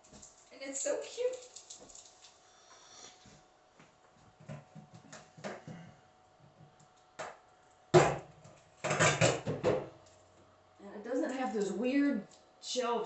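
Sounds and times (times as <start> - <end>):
clattering of packaging: 1.2 - 2.4.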